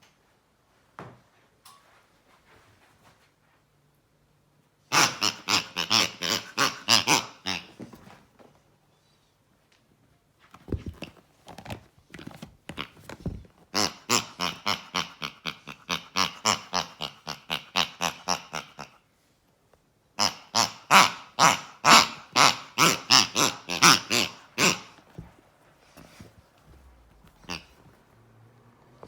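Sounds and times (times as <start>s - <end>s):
pigs squealing: 4.9s - 7.7s, 13.8s - 19.0s, 20.2s - 25.3s, 27.2s - 28.0s.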